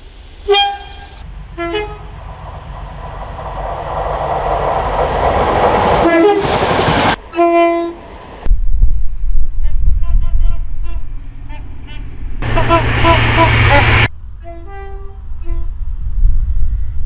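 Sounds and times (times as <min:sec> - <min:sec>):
train rumble: 0:00.0 - 0:17.0
two-tone train horn: 0:00.4 - 0:02.2, 0:06.0 - 0:06.5, 0:07.3 - 0:08.1, 0:09.6 - 0:15.9.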